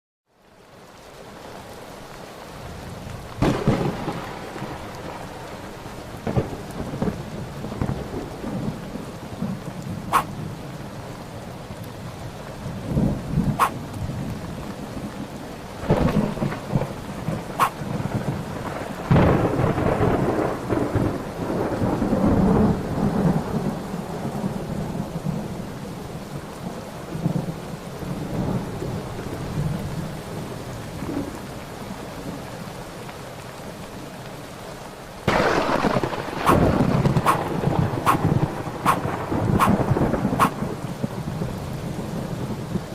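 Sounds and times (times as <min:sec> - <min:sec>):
steady rain: 0:00.2 - 0:42.9
rolling thunder: 0:03.3 - 0:05.4, 0:06.1 - 0:10.6, 0:15.8 - 0:25.5, 0:35.3 - 0:42.8.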